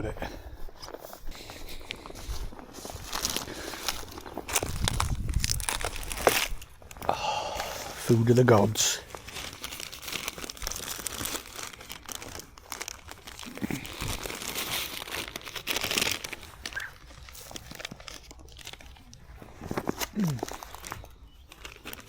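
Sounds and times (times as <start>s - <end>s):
food wrapper crinkling: 0.7s - 22.0s.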